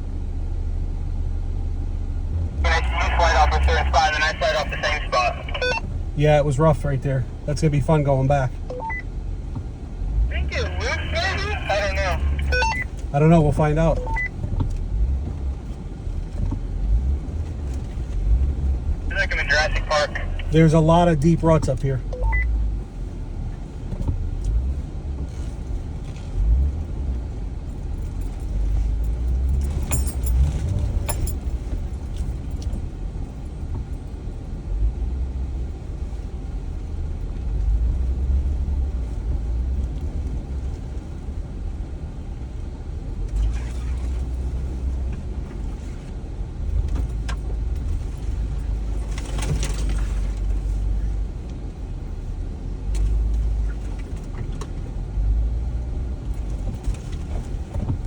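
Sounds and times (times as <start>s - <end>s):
engine and tyre rumble: 0.0s - 58.0s
vehicle clattering over ruts: 23.4s - 34.7s, 35.5s - 58.0s.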